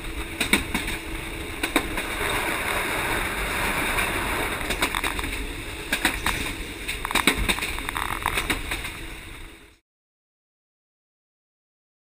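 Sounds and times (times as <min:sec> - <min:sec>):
train rumbling on track: 0:00.0 - 0:09.8
knocks and rattles: 0:04.6 - 0:09.0.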